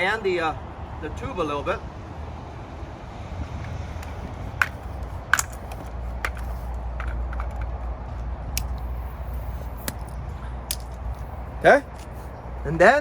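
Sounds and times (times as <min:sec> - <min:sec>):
steady low rumble: 0:00.0 - 0:13.0
bicycle pump clicks and taps: 0:03.6 - 0:07.7, 0:09.8 - 0:11.0.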